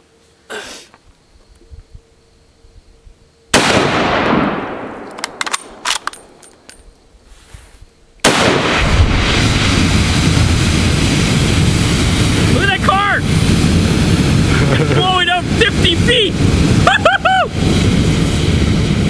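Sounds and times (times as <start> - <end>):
blast: 3.5 - 5.0, 8.2 - 19.0
rifle shot: 3.5 - 6.4, 8.2 - 9.7
sharp clicks: 5.0 - 6.9
roar of burning gas jet: 8.4 - 19.0.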